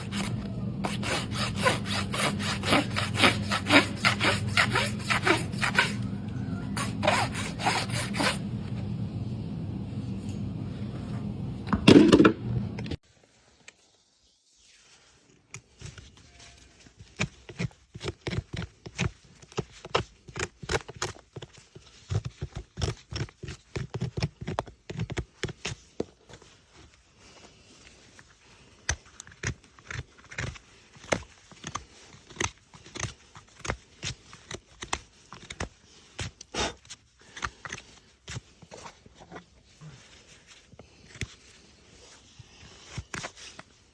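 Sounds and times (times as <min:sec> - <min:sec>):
rasp filing hoof: 0:00.0 - 0:06.1, 0:06.8 - 0:08.4
hoof trimming clicks and scrapes: 0:15.5 - 0:43.9.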